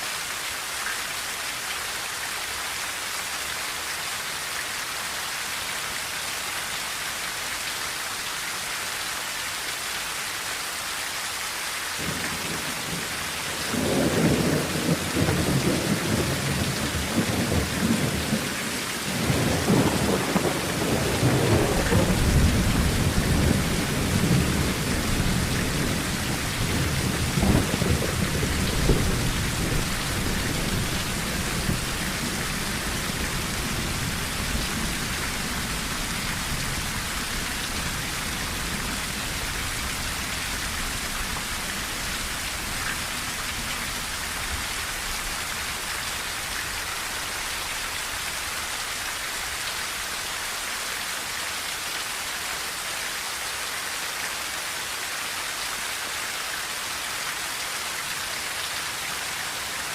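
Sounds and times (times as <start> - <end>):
heavy rain on a tin roof: 0.0 - 59.9
thunder rumbling and cracking: 12.0 - 18.5, 19.1 - 41.1.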